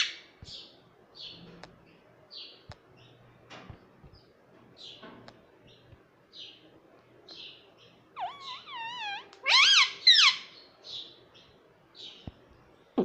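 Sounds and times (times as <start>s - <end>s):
parakeet chirping and calling: 0.0s - 1.5s, 7.3s - 12.3s.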